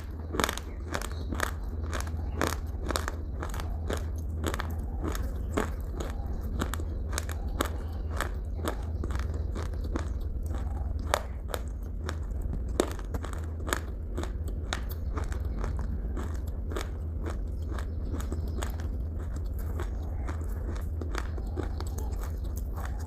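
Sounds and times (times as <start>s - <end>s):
crunchy food being chewed: 0.0s - 23.0s
low hum: 0.0s - 23.0s.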